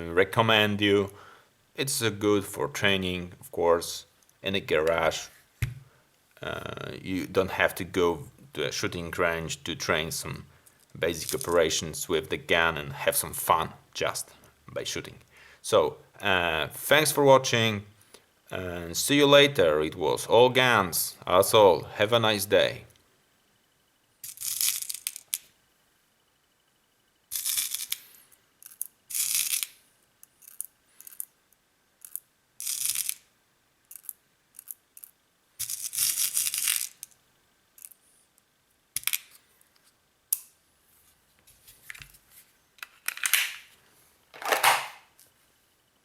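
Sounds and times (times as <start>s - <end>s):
rustling and clattering handling noises: 40.9s - 45.4s.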